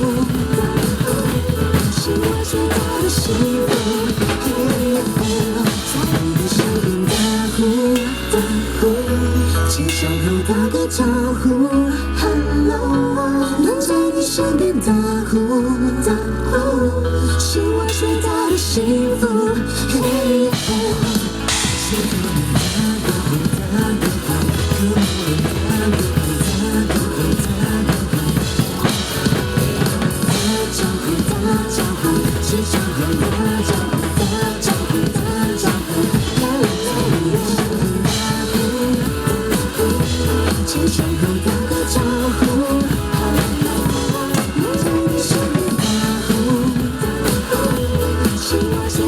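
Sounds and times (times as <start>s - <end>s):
drum kit playing: 0.0s - 10.7s, 17.8s - 49.0s
pop-rock backing track: 0.0s - 49.0s.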